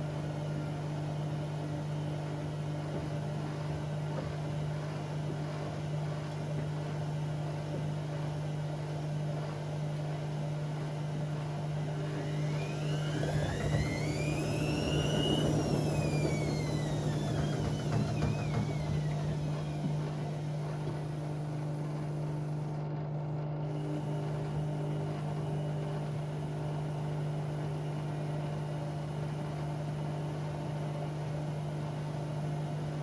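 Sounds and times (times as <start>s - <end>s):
washing machine humming: 0.0s - 33.0s
drum motor whine: 7.5s - 22.8s, 23.7s - 33.0s.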